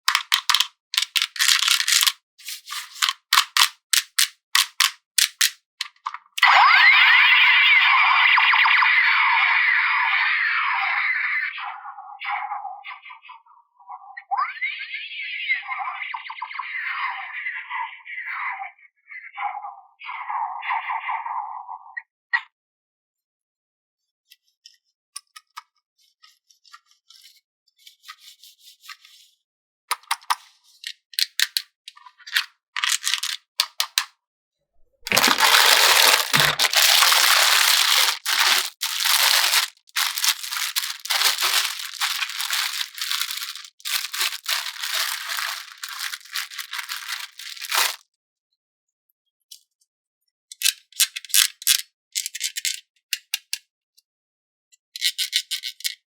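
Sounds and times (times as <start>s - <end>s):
plastic packaging crinkling and tearing: 0.1s - 6.1s, 32.8s - 33.5s, 35.1s - 48.0s
plastic packaging crackling: 0.1s - 6.2s, 32.8s - 33.4s, 35.1s - 48.0s.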